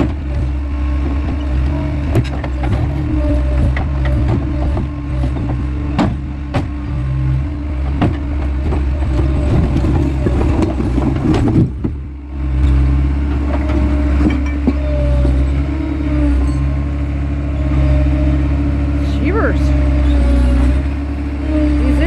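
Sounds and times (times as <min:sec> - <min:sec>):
skid steer engine running: 0:00.0 - 0:22.0.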